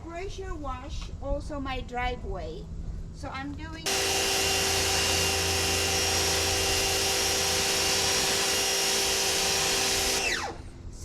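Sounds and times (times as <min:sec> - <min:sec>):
pressure washer motor whine: 0:03.8 - 0:10.9.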